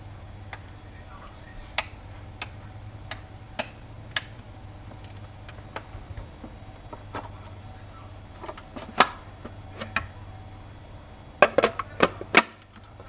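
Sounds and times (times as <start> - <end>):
low steady hum: 0.0 - 13.0
plastic parts clicking and knocking: 11.4 - 13.0.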